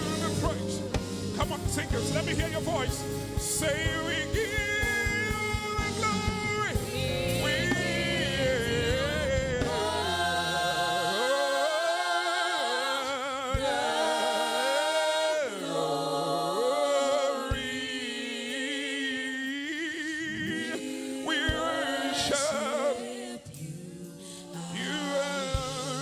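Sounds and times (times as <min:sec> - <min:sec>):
low backing sound: 0:00.0 - 0:11.4
person singing gospel: 0:00.0 - 0:26.0.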